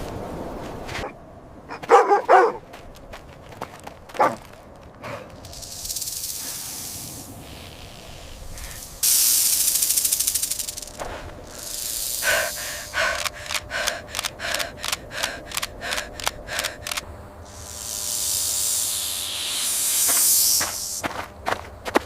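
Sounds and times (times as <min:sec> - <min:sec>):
high hissing noise: 0:05.4 - 0:15.2, 0:15.9 - 0:21.1.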